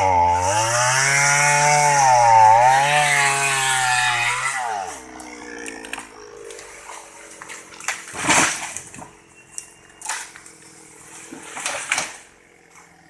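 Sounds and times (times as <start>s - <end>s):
chainsaw idling: 0.0s - 7.8s, 12.2s - 13.0s.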